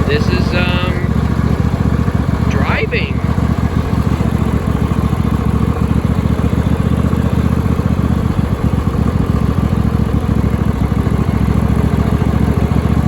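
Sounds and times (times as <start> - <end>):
lawn tractor engine running: 0.0 - 13.0.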